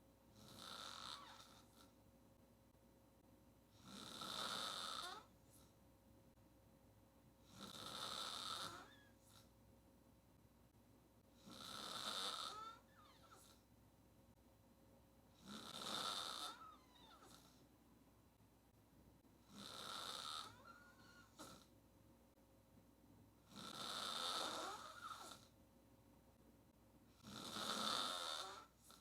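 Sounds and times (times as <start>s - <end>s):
quiet breaths: 0.0s - 17.8s, 18.4s - 29.0s
woman snoring: 0.4s - 1.9s, 3.8s - 5.3s, 7.5s - 9.5s, 11.4s - 13.6s, 15.4s - 17.5s, 19.5s - 21.7s, 23.5s - 25.5s, 27.2s - 29.0s.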